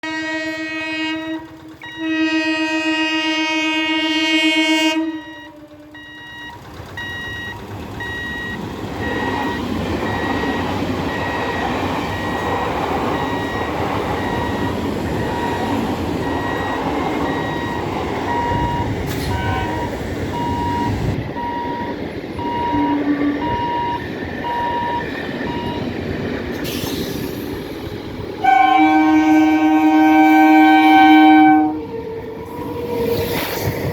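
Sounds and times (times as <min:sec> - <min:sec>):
train horn: 0:00.0 - 0:06.3, 0:18.3 - 0:20.8, 0:22.4 - 0:24.0, 0:28.4 - 0:31.9
train rumbling past: 0:00.0 - 0:33.9
faint on-off beeping: 0:05.2 - 0:25.9.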